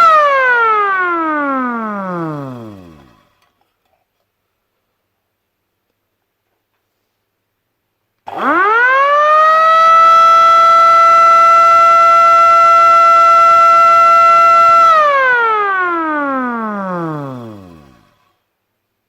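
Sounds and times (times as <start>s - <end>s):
air-raid siren wailing: 0.0s - 3.2s, 8.3s - 18.2s.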